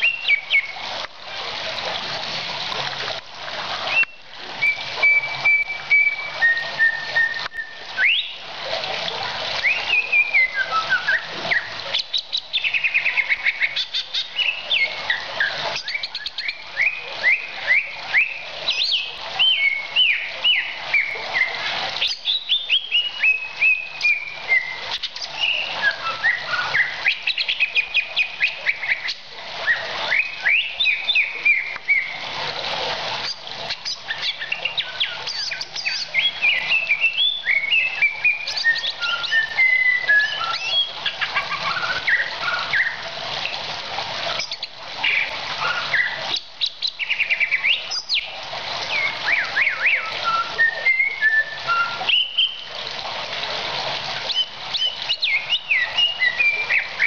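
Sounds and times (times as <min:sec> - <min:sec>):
bird singing varied whistles: 0:03.9 - 0:08.4, 0:09.6 - 0:13.8, 0:22.1 - 0:29.1, 0:33.8 - 0:43.0, 0:48.9 - 0:52.7, 0:54.3 - 0:57.0.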